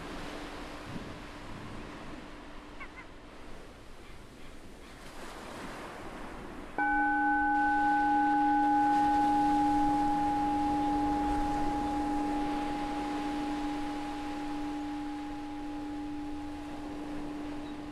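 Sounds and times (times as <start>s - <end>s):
ocean waves washing on beach: 0.0s - 17.9s
meditation bell ringing: 6.8s - 17.9s.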